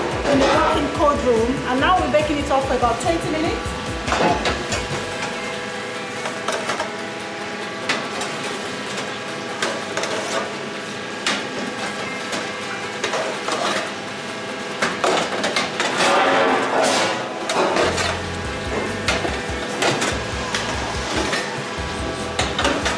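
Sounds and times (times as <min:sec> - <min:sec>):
metal trays and pans clanking: 0:00.0 - 0:01.2, 0:14.8 - 0:18.3, 0:22.3 - 0:22.9
steady hum: 0:00.0 - 0:13.2, 0:15.8 - 0:22.9.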